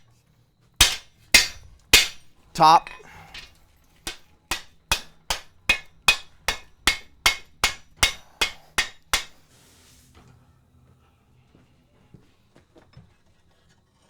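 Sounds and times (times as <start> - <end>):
hammer striking steel on anvil: 0.8 - 9.4.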